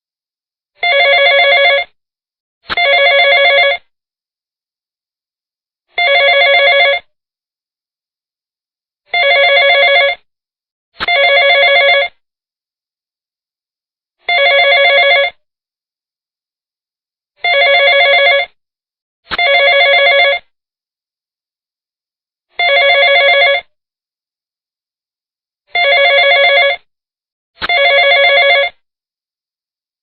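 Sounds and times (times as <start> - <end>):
telephone ringing trill: 0.8 - 1.9, 2.7 - 3.8, 6.0 - 7.1, 9.1 - 10.2, 11.0 - 12.1, 14.3 - 15.4, 17.4 - 18.5, 19.3 - 20.4, 22.6 - 23.7, 25.8 - 26.9, 27.6 - 28.8.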